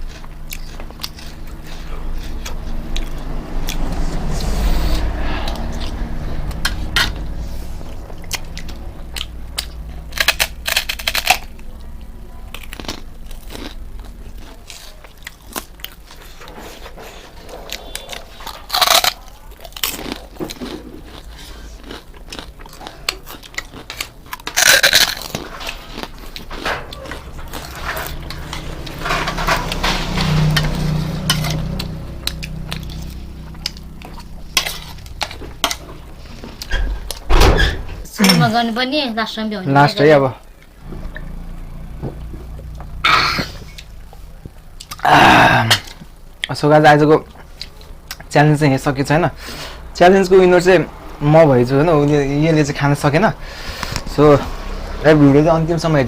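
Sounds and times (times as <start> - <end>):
chewing crisp food: 0.0 - 4.6, 7.9 - 37.2, 40.4 - 45.1, 45.8 - 48.3.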